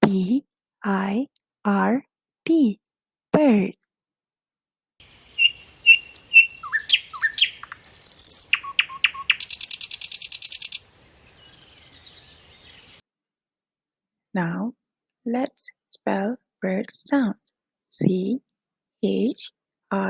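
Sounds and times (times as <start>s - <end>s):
buzzy bird trill: 5.0s - 12.6s
songbird chirping: 5.0s - 13.0s.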